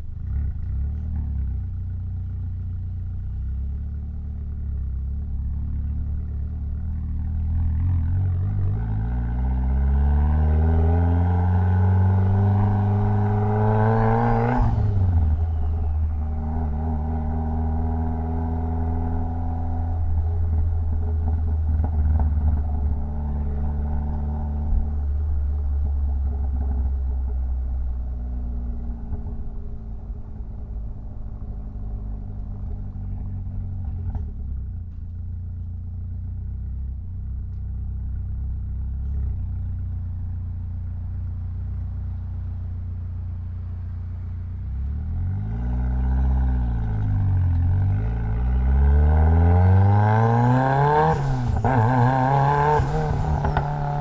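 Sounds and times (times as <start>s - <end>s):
car engine accelerating hard: 5.3s - 35.0s, 44.5s - 54.0s.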